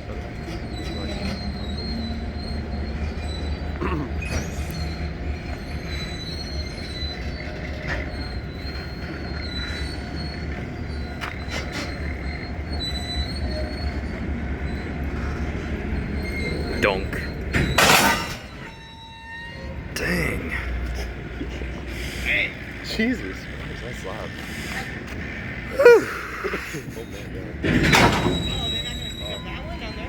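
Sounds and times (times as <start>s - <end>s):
locomotive rumble: 0.0s - 30.0s
steel wheels squealing on rail: 0.0s - 30.0s
metallic clanks: 17.5s - 18.6s.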